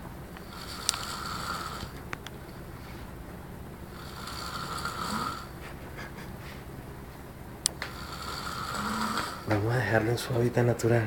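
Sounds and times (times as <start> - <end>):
man snoring: 0.4 - 2.0, 3.8 - 6.2, 7.8 - 10.2.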